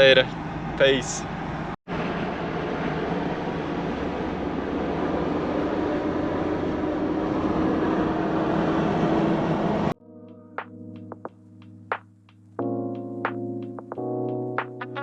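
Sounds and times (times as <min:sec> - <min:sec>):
road and wind noise: 0:00.0 - 0:10.0
vehicle engine hum: 0:00.0 - 0:10.0.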